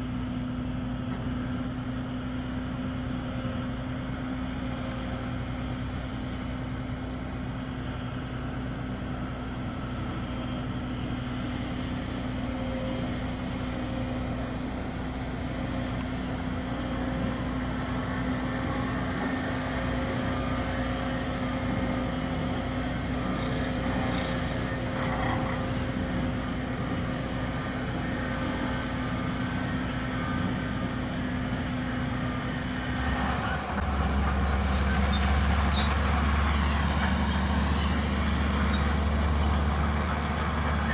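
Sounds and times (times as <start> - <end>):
diesel construction machinery engine: 0.0 - 40.9
metal squeal: 32.9 - 40.9.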